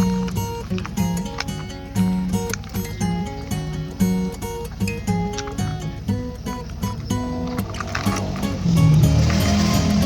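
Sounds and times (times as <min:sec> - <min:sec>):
plucked guitar melody with beat: 0:00.0 - 0:10.0.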